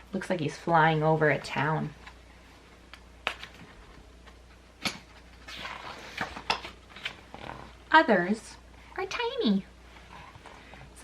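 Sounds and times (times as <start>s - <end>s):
faint low hum: 0.0s - 11.0s.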